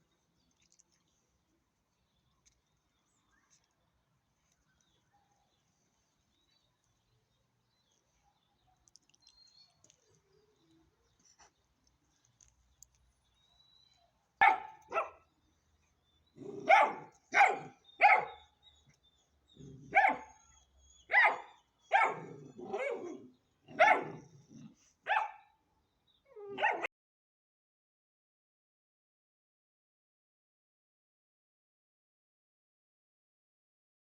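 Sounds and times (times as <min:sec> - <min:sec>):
puppy barking: 0:14.4 - 0:15.2, 0:16.4 - 0:18.5, 0:19.8 - 0:20.4, 0:21.1 - 0:24.2, 0:25.1 - 0:25.5, 0:26.4 - 0:26.9.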